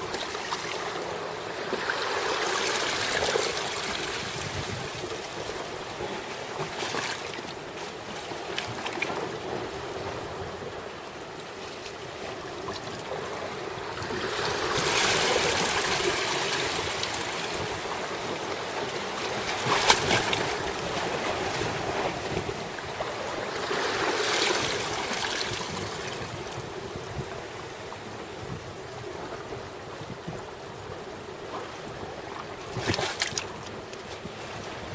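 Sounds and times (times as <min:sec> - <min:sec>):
sea water washing in swells: 0:00.0 - 0:34.9
wind on microphone: 0:00.0 - 0:34.9.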